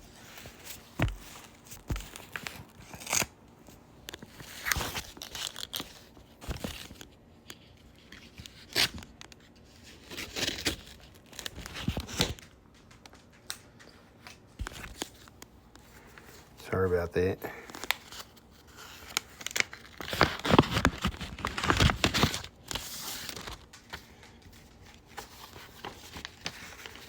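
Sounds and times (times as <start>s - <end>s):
paper crinkling and snapping: 0.1s - 27.0s
paper envelope tearing: 0.3s - 3.3s, 17.6s - 24.3s.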